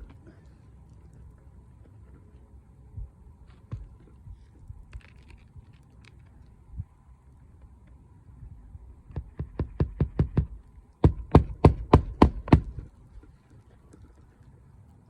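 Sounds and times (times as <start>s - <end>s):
hammer striking roofing nails: 9.1s - 12.8s.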